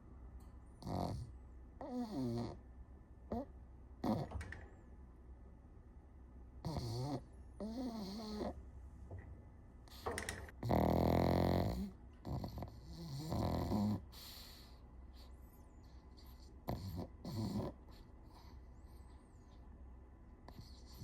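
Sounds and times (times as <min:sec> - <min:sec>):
dog snoring: 0:00.8 - 0:02.6, 0:03.3 - 0:04.3, 0:06.6 - 0:08.6, 0:09.9 - 0:15.3, 0:16.1 - 0:19.0, 0:20.5 - 0:21.0.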